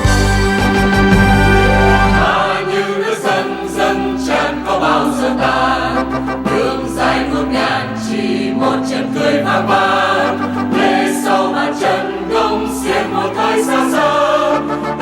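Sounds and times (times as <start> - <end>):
instrumental backing with bass: 0.0 - 2.6
choir singing: 0.0 - 15.0.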